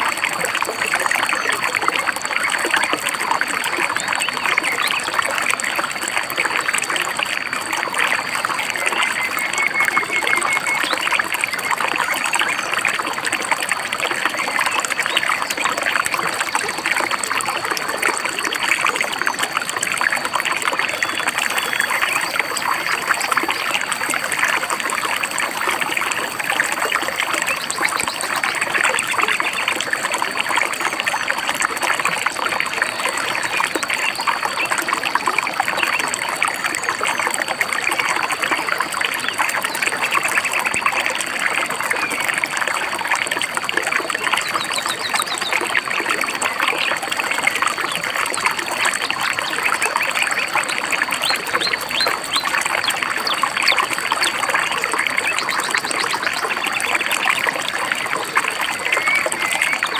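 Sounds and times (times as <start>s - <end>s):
river babbling over stones: 0.0s - 59.9s
faint bird chirps: 20.6s - 29.6s.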